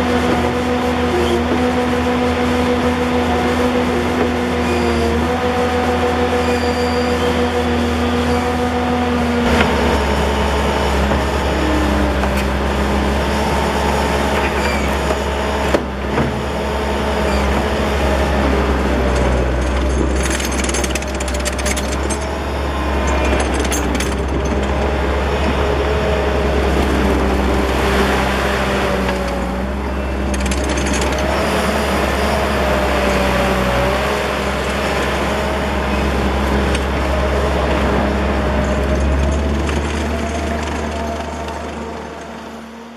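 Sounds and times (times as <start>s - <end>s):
diesel engine running: 0.0s - 42.9s
wavering whine: 0.0s - 42.9s
machine clatter: 19.0s - 25.6s, 29.0s - 32.6s, 37.6s - 42.7s.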